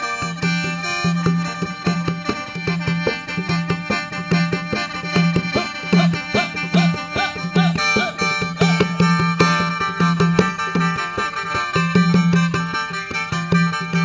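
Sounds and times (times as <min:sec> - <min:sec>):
steady drum beat: 0:02.6 - 0:09.3
bamboo mouth organ playing: 0:05.4 - 0:08.9.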